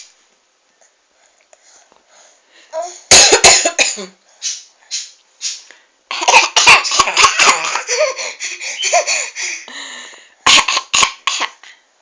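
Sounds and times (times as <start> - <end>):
woman coughing: 3.1 - 4.2, 6.1 - 7.9, 10.5 - 11.6
baby laughing: 6.1 - 9.7.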